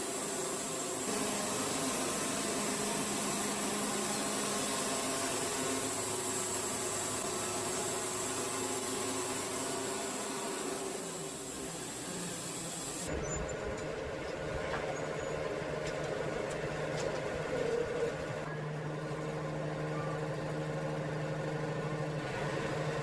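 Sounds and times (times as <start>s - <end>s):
band saw blade hissing: 0.0s - 13.4s
sawmill engine running: 0.0s - 23.0s.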